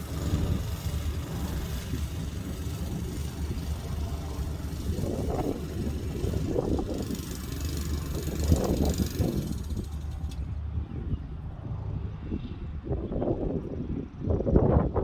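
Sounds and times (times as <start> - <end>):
lawn mower engine running: 0.0 - 10.8.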